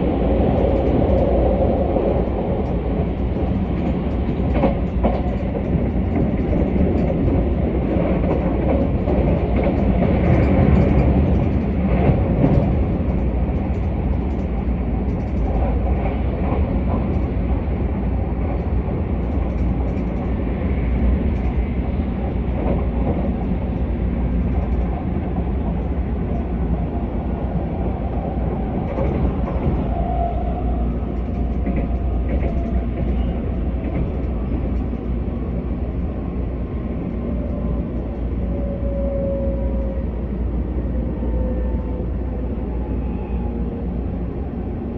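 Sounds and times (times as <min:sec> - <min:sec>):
train wheels rumbling on rail: 0:00.0 - 0:44.9
faint track clicks: 0:31.0 - 0:35.2.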